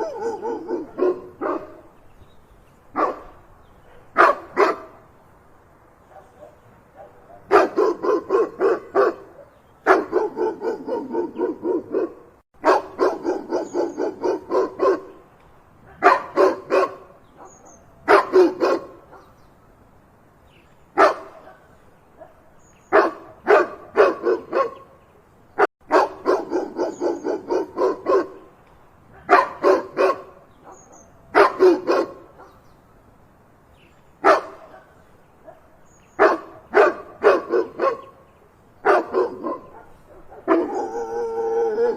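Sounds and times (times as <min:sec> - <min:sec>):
dog barking: 0:00.0 - 0:01.8, 0:03.0 - 0:04.9, 0:06.1 - 0:15.2, 0:15.9 - 0:19.3, 0:21.0 - 0:24.8, 0:25.9 - 0:28.5, 0:29.2 - 0:32.6, 0:34.2 - 0:38.1, 0:38.8 - 0:41.9.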